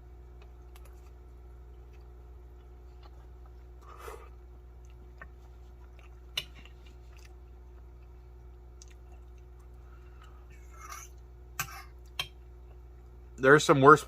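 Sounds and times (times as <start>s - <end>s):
person chewing noodles: 0.2s - 11.2s.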